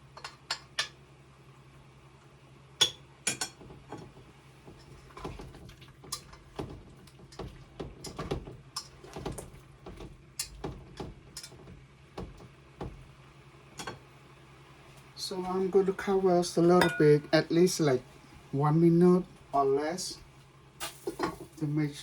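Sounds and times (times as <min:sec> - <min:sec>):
steady low hum: 0:00.0 - 0:22.0
utensil clinking on pan: 0:16.8 - 0:17.3.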